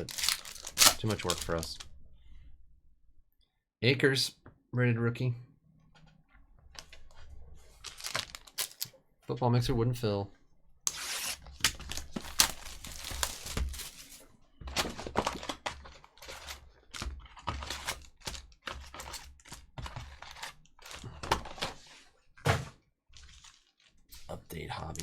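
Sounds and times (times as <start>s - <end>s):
trading cards and boxes handled: 0.0s - 1.9s, 5.9s - 9.0s, 10.9s - 25.0s.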